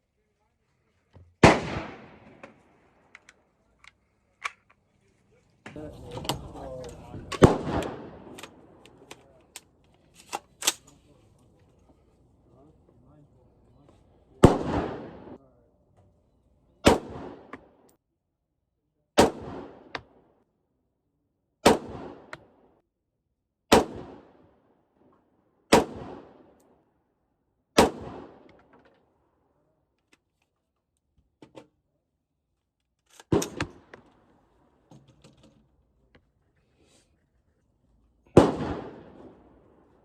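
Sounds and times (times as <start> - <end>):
gunshots with echo: 1.4 - 2.5, 7.4 - 8.8, 14.4 - 15.4, 16.8 - 17.7, 21.6 - 22.3, 25.7 - 26.5, 27.8 - 28.5, 38.4 - 39.6.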